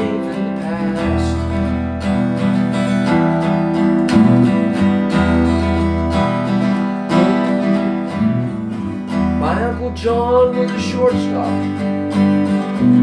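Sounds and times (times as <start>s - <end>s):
acoustic guitar strumming: 0.0s - 13.0s
held low notes: 4.0s - 6.2s, 7.1s - 9.9s, 12.8s - 13.0s.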